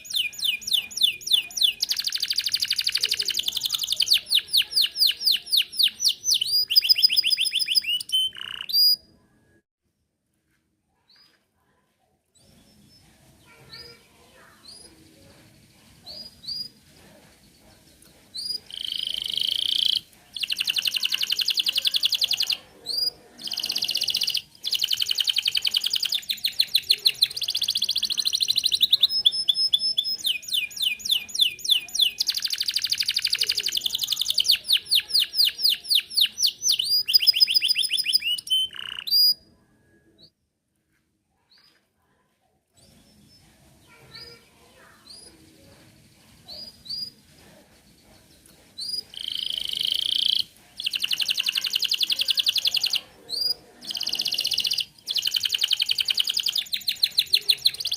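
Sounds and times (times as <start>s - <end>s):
canary singing: 0.0s - 9.2s, 17.9s - 40.3s, 48.4s - 57.9s.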